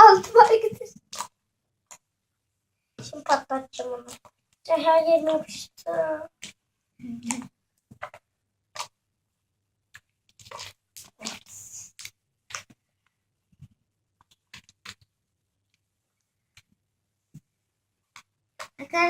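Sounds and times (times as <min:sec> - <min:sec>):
slime squelching: 0:00.0 - 0:02.1, 0:03.0 - 0:09.0, 0:09.9 - 0:15.8, 0:18.1 - 0:19.0
slime popping and clicking: 0:00.2 - 0:01.3, 0:10.0 - 0:12.8.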